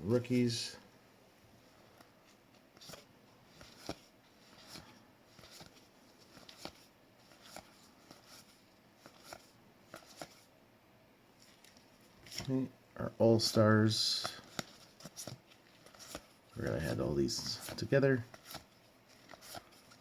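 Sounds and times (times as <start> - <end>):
cards clicking and rustling: 1.8 - 10.5, 11.4 - 12.6, 13.4 - 20.0.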